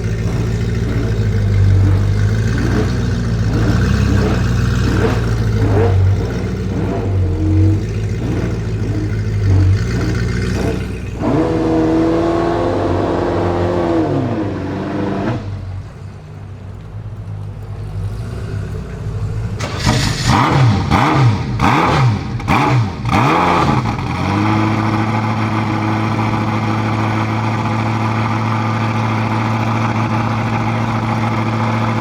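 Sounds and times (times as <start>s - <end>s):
exhaust pops: 0.0s - 13.2s
car engine revving: 0.0s - 32.0s.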